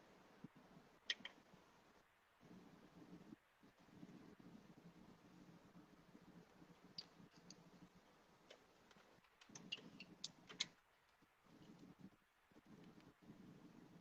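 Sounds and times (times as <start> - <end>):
faint low hum: 0.0 - 14.0
faint sharp clicks: 1.0 - 1.4, 6.5 - 7.7, 8.4 - 12.0, 12.8 - 13.2.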